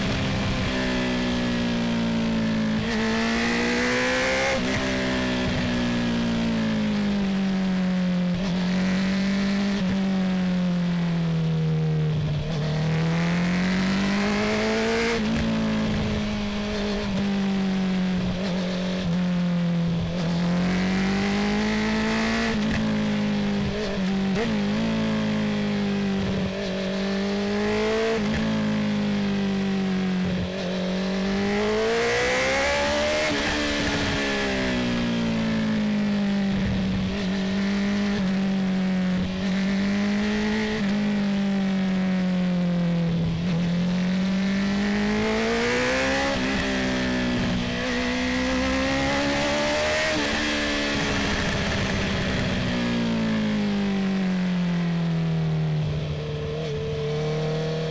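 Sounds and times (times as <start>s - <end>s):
motorcycle exhaust note: 29.2s - 57.9s.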